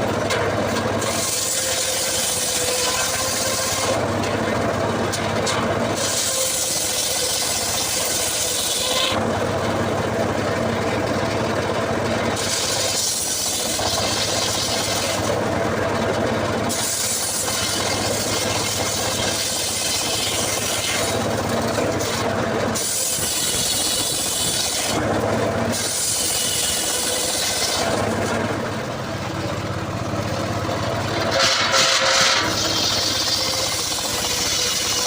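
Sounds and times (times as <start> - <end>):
chainsaw cutting wood: 0.0 - 4.4, 5.1 - 9.2, 12.3 - 15.4, 16.6 - 28.7, 31.1 - 35.0.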